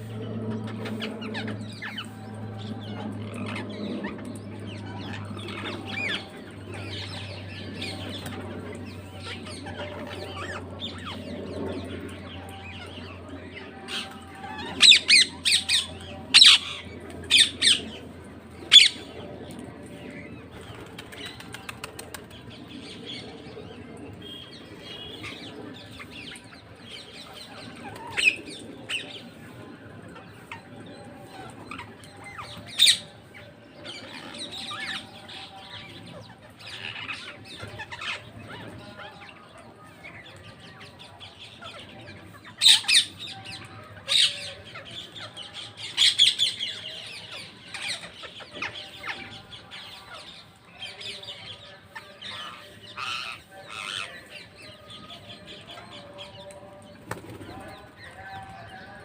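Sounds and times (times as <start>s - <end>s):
parrots chirping and squawking: 0.0s - 11.4s, 12.3s - 18.0s, 18.6s - 19.1s, 41.6s - 56.7s.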